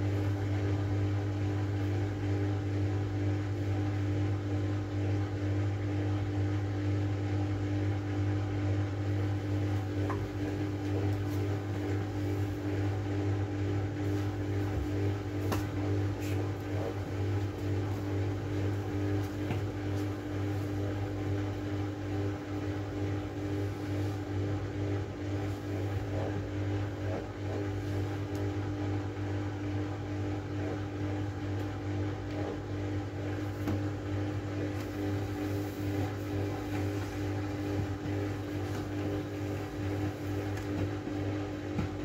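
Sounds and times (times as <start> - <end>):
washing machine motor hum: 0.0 - 42.0.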